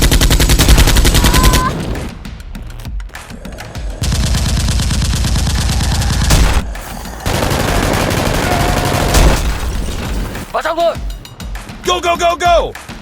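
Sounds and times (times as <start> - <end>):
automatic gunfire: 4.0 - 10.1.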